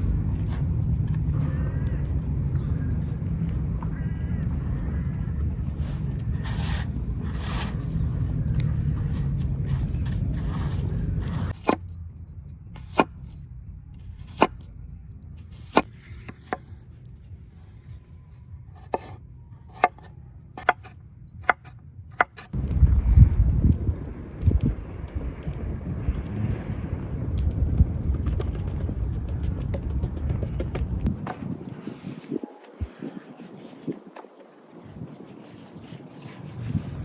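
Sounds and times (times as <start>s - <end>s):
steady low rumble: 0.0s - 15.4s, 22.5s - 33.5s.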